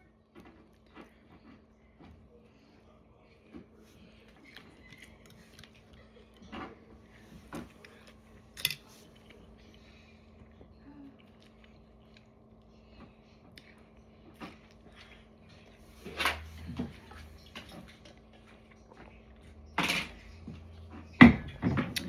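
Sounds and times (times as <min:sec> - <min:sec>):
chewing: 0:03.9 - 0:15.9.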